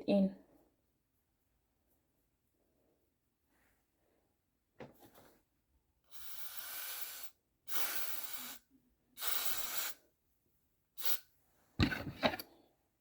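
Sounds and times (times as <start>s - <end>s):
aerosol hairspray hissing: 6.1s - 8.6s, 9.2s - 10.0s, 11.0s - 11.2s.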